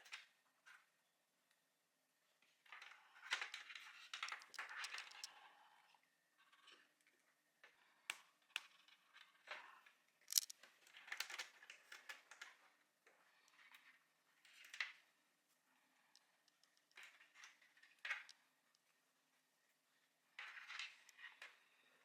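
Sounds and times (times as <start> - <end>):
plastic parts clicking and snapping: 4.2 - 5.3, 10.3 - 10.5.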